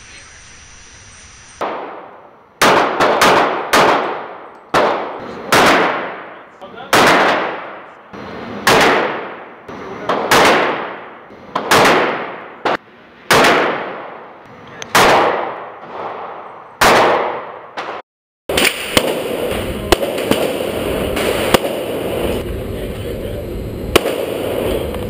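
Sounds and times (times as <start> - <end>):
steady background noise: 0.0 - 16.8, 18.5 - 25.0
handgun shots with echo: 1.6 - 6.3, 8.6 - 9.4, 10.1 - 14.1, 14.8 - 22.0, 24.0 - 24.4
faint sharp cracks: 17.8 - 21.8.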